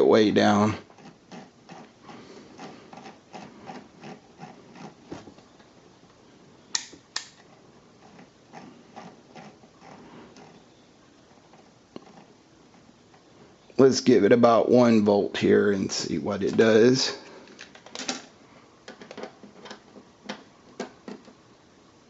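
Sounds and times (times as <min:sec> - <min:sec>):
sharp clicks: 0:06.7 - 0:07.4.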